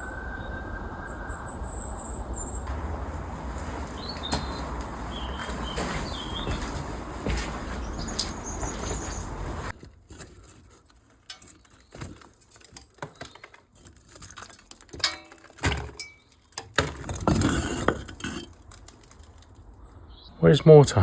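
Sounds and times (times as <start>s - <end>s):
objects knocking and clinking: 11.2s - 19.4s.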